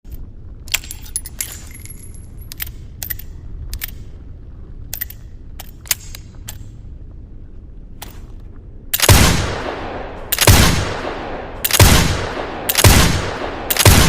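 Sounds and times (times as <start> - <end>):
revolver metallic clicks: 0.1 - 4.2, 4.8 - 6.8.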